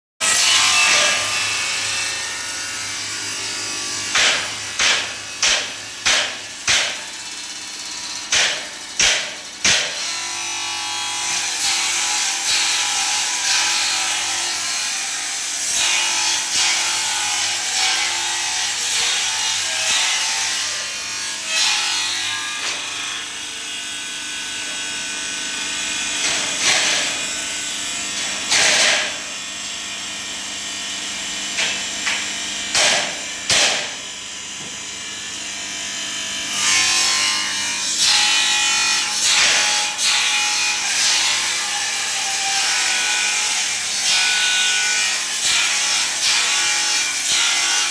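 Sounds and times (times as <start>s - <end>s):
power grinder grinding metal: 0.2s - 47.9s
sharp knocks: 4.1s - 7.1s, 8.3s - 10.1s, 31.6s - 34.0s.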